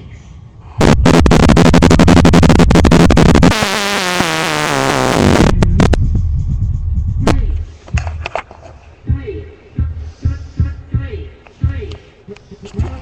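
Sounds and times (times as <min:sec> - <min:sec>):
bass-heavy electronic music: 0:00.8 - 0:07.8.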